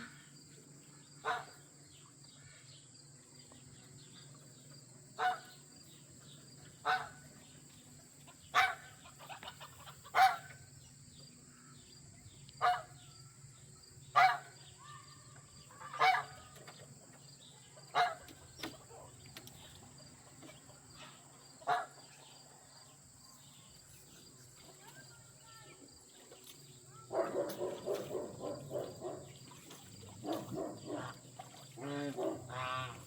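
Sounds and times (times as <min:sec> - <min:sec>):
geese honking: 0:05.2 - 0:05.5, 0:06.8 - 0:07.2, 0:08.4 - 0:10.6, 0:15.7 - 0:16.6, 0:17.9 - 0:19.1, 0:30.0 - 0:33.0.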